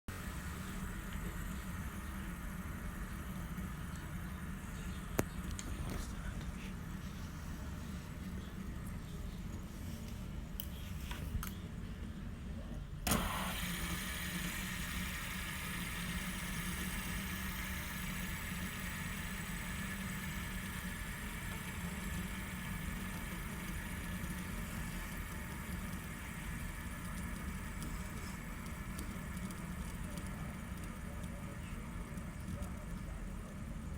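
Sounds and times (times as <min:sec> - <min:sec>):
fidget spinner whirring: 0:00.1 - 0:11.8, 0:13.0 - 0:33.9
fidget spinner click: 0:13.0 - 0:33.9.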